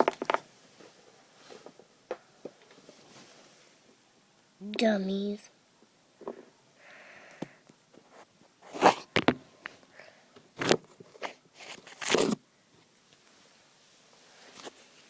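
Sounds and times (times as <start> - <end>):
plastic toys scraping and knocking: 0.0 - 0.5, 8.0 - 9.4, 10.6 - 12.4.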